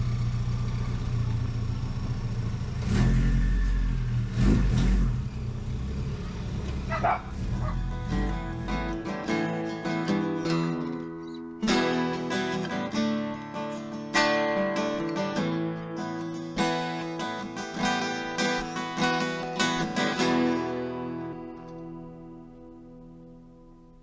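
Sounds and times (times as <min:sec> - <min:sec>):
acoustic guitar strummed chords: 0:07.1 - 0:24.0.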